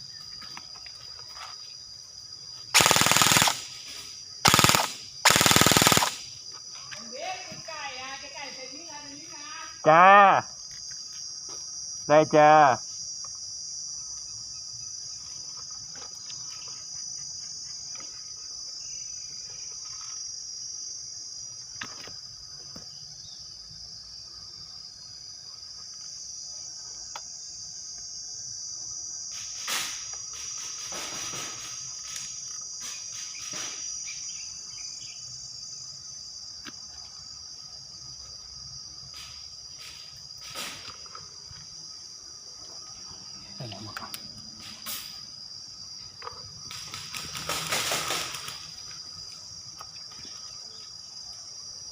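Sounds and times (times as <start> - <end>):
high-pitched insect drone: 0.0 - 51.9.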